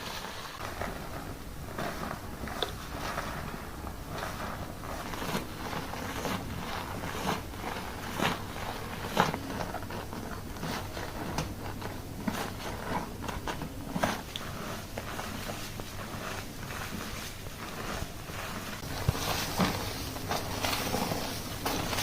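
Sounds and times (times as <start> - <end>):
hands scrubbing shampooed hair: 0.0 - 22.0.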